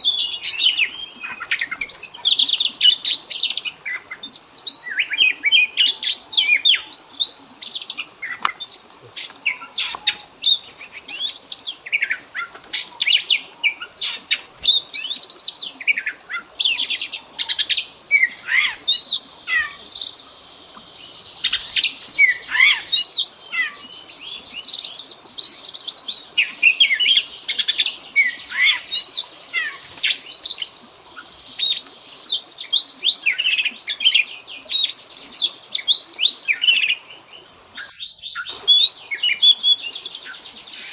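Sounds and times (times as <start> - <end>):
songbird singing whistled phrases: 0.0 - 20.3, 21.4 - 40.9.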